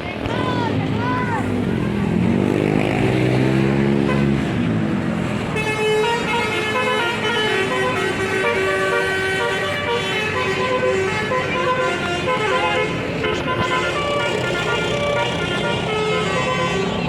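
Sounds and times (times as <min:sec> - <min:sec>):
bus engine revving: 0:00.6 - 0:17.0
musical horn tune: 0:05.6 - 0:17.0.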